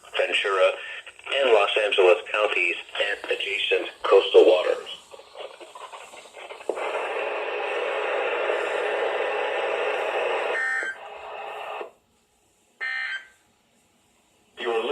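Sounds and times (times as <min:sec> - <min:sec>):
radio static hiss: 0:00.0 - 0:12.0, 0:14.5 - 0:14.9.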